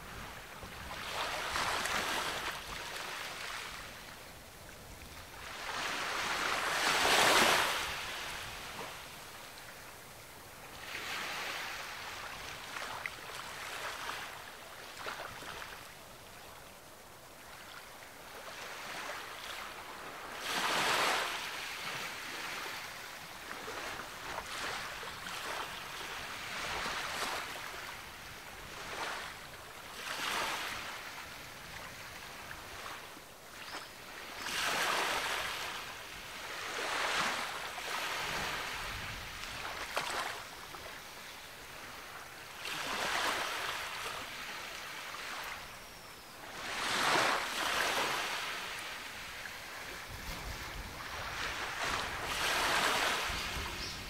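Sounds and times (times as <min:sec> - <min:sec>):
ocean waves breaking on beach: 0:00.0 - 0:10.0, 0:10.6 - 0:16.0, 0:17.4 - 0:45.7, 0:46.4 - 0:54.0.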